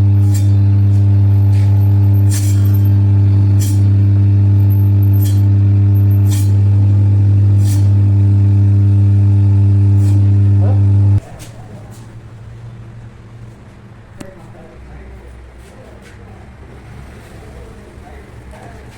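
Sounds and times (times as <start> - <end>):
cutting machine motor hum: 0.0 - 11.2.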